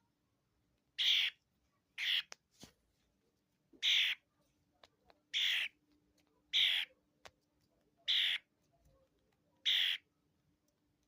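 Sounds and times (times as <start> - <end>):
baby starling begging calls: 1.0 - 1.4, 3.8 - 4.2, 5.4 - 5.8, 6.5 - 6.9, 8.1 - 8.5, 9.6 - 10.0.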